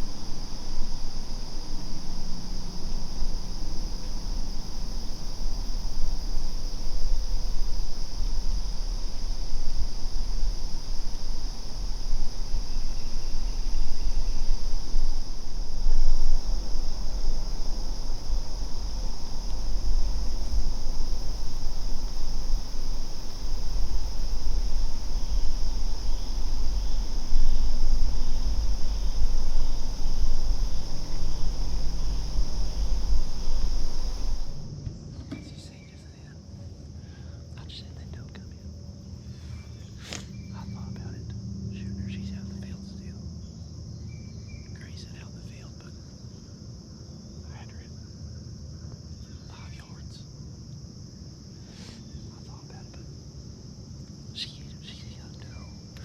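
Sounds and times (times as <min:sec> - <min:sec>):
wind rumble on microphone: 0:00.0 - 0:36.8
crickets trilling: 0:00.0 - 0:56.0.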